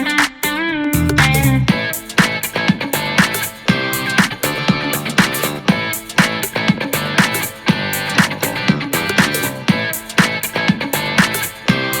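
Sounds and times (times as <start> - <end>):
upbeat electric guitar music: 0.0 - 12.0.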